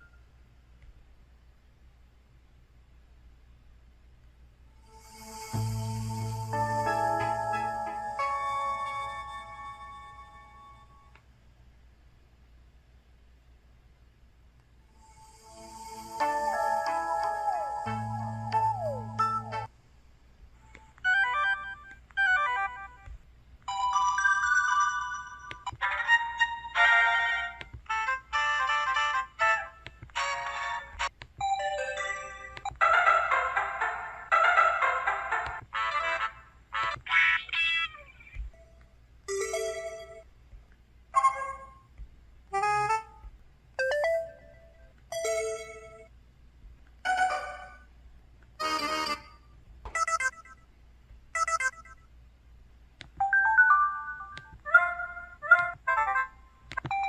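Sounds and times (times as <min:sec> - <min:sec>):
synthesized phone tones: 0:05.5 - 0:09.0, 0:16.0 - 0:19.7
stepping notes: 0:05.5 - 0:09.8, 0:16.1 - 0:19.7.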